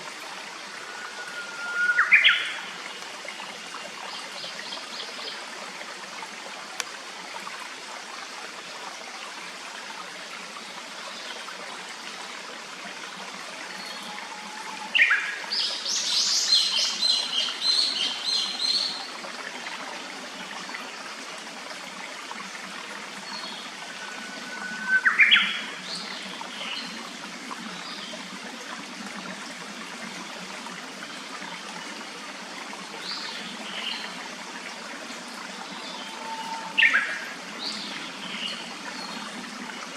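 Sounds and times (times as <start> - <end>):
stream rushing: 0.0 - 39.9
songbird calling: 1.0 - 2.6, 24.5 - 25.6, 35.8 - 37.2.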